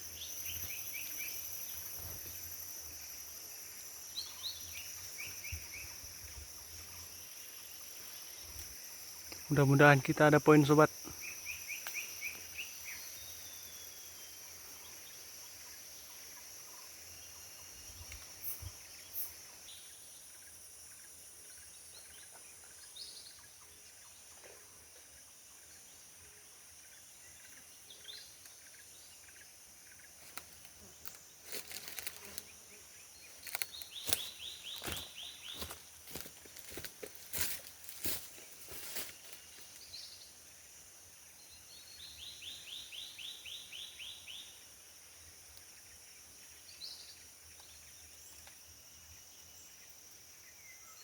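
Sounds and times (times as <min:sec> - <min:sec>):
insects droning: 0:00.0 - 0:51.0
bird calls: 0:33.2 - 0:40.2.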